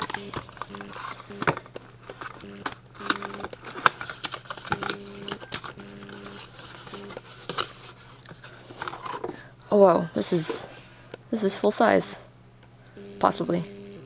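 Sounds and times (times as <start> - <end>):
cardboard packaging crinkling: 0.0 - 9.5
faint low hum: 0.0 - 14.0.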